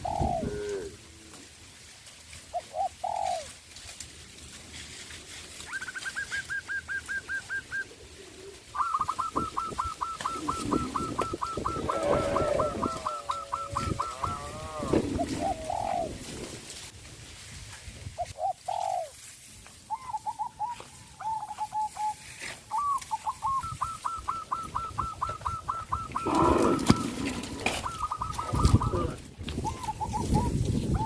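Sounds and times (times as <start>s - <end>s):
birds calling: 0.0s - 0.7s, 2.5s - 3.5s, 8.7s - 16.2s, 18.2s - 19.1s, 19.9s - 31.0s
cattle crunching bamboo: 0.6s - 6.5s, 25.2s - 30.7s.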